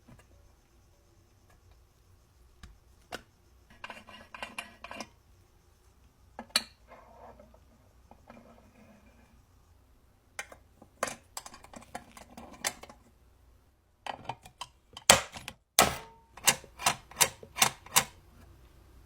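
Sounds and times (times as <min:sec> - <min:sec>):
metallic clicks of sewing-machine parts: 0:14.1 - 0:18.2.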